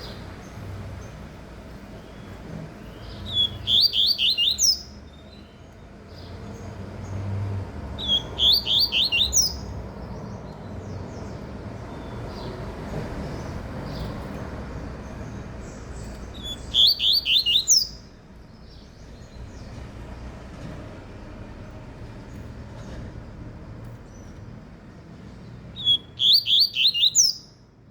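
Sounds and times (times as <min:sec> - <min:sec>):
bird singing high chirps: 0:02.0 - 0:06.3, 0:08.0 - 0:12.6, 0:15.0 - 0:19.7, 0:25.8 - 0:27.7.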